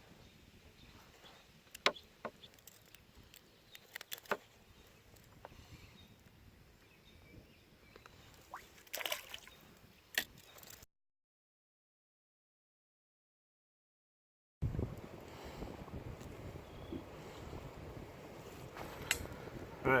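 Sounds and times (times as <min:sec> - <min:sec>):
water ambience: 0:08.0 - 0:10.7, 0:14.6 - 0:20.0.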